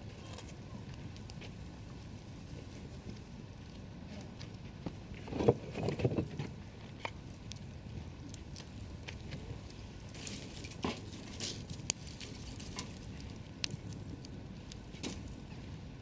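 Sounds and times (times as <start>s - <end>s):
campfire crackling: 0.0s - 16.0s.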